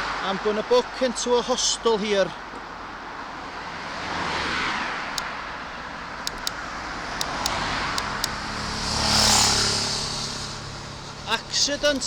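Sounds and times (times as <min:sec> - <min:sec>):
cars passing: 0:00.0 - 0:12.0
sharp light ticks: 0:06.2 - 0:06.6, 0:07.2 - 0:08.4, 0:11.5 - 0:12.0.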